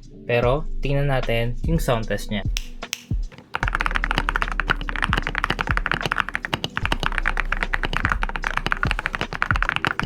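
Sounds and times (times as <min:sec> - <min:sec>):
mechanical keyboard typing: 0:03.4 - 0:10.0.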